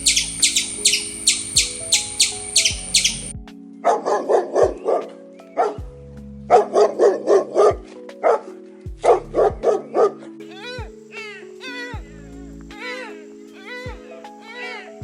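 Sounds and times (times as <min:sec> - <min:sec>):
high rapid chirping: 0:00.0 - 0:03.3
background music: 0:00.0 - 0:15.0
dog barking: 0:03.8 - 0:05.8, 0:06.5 - 0:10.3.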